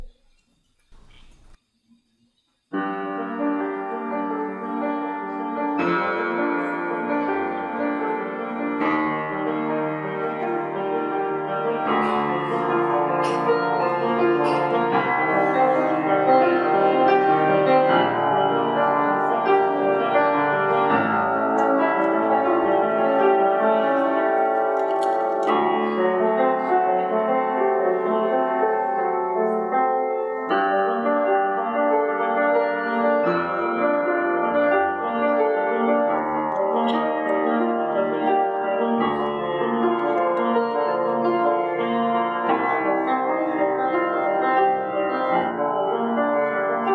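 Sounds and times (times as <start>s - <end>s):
solo piano: 2.7s - 46.9s.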